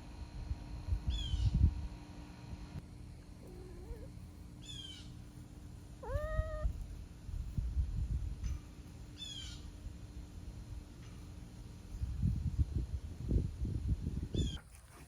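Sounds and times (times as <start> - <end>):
animal high falling calls: 6.0 - 6.7.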